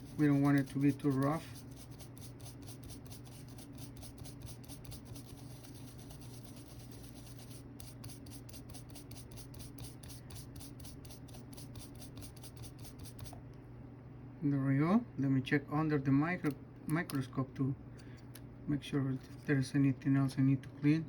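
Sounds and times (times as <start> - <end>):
toothbrush scratching connector: 0.0 - 13.4
steady low hum: 0.0 - 21.0.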